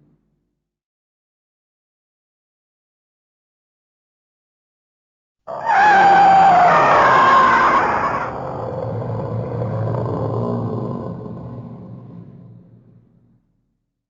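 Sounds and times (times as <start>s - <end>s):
low rumble: 8.4s - 13.7s.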